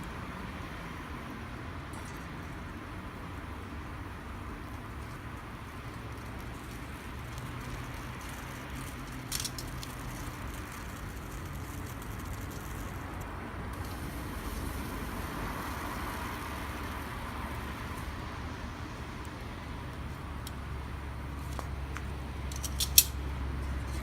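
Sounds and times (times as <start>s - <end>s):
car passing: 0.0s - 24.0s
distant road traffic rumble: 0.0s - 24.0s
campfire wood popping: 1.8s - 18.3s.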